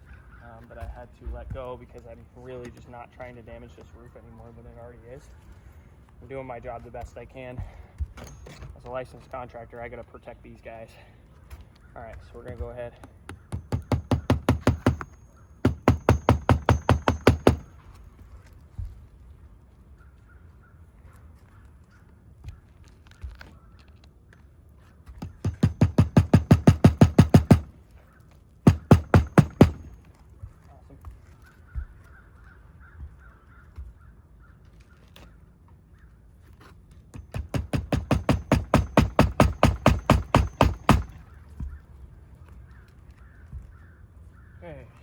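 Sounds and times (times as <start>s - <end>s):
hammer blows on shingle roof: 12.4s - 18.0s, 25.1s - 27.8s, 28.6s - 30.2s, 37.1s - 41.8s
crow cawing: 31.7s - 34.6s.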